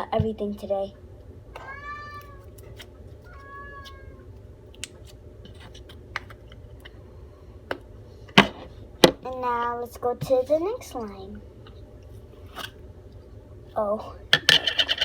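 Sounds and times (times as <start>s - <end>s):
low background hum: 0.0s - 15.0s
cat meowing: 1.5s - 2.5s, 3.2s - 4.3s.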